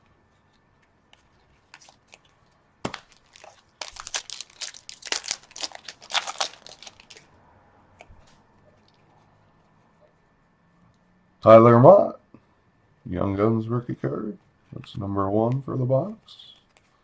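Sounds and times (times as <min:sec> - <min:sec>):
foil wrapper crinkling and tearing: 0:02.9 - 0:07.3.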